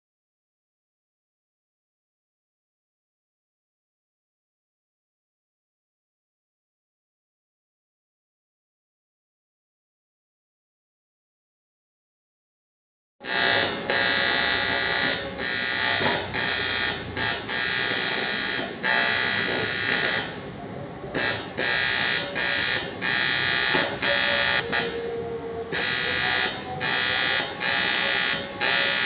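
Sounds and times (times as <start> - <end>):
welding arc buzzing: 13.2 - 20.5, 21.1 - 25.0, 25.7 - 29.0.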